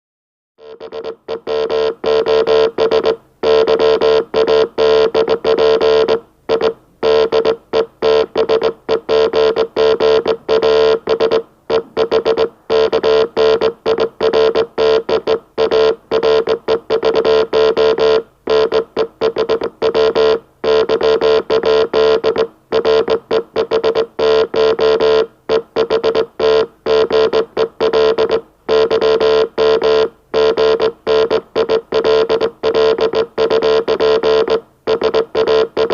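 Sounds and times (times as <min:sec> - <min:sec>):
morse code buzzy tone: 0:00.6 - 0:35.9.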